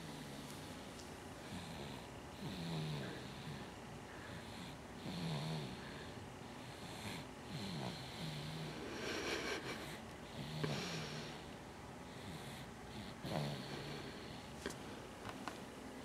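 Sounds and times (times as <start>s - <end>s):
person snoring: 7.5s - 11.5s.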